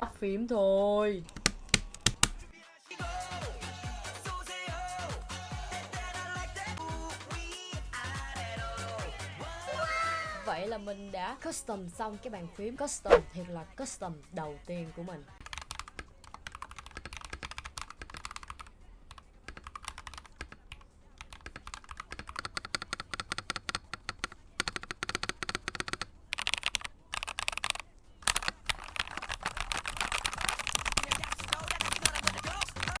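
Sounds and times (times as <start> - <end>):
mechanical keyboard typing: 1.2 - 2.5, 15.4 - 33.0.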